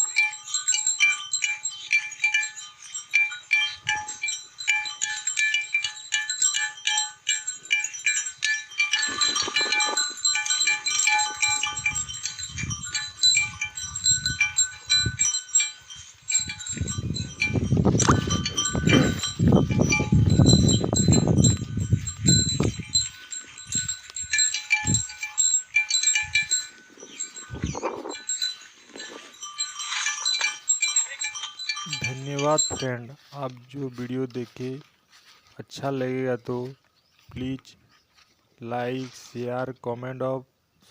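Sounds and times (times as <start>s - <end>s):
bell tinkling: 0.0s - 35.4s
water buffalo bellowing: 8.8s - 11.8s, 26.8s - 30.0s.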